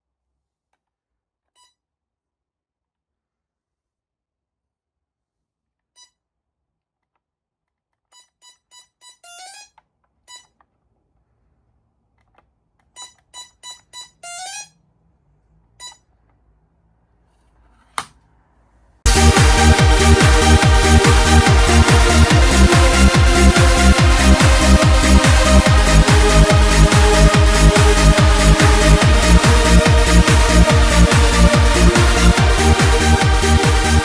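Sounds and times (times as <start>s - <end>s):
keypad key beeps: 12.9s - 14.7s.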